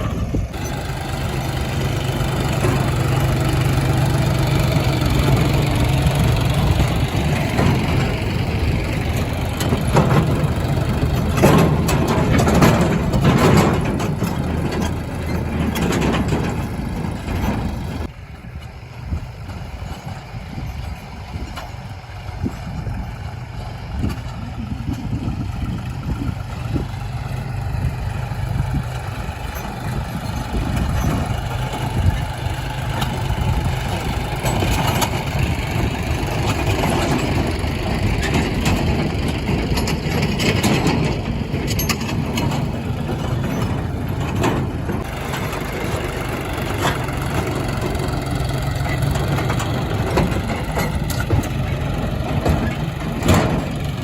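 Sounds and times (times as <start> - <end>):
diesel engines running: 0.0 - 54.0.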